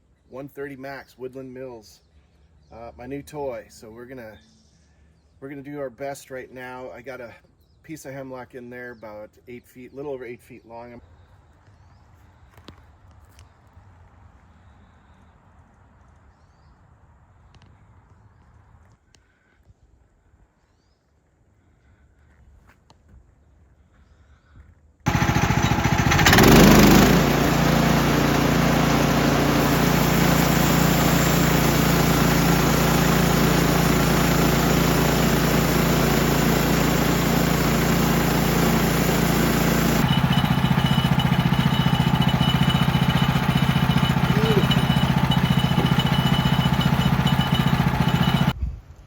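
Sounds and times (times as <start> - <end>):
gas engine running: 25.1 - 48.6.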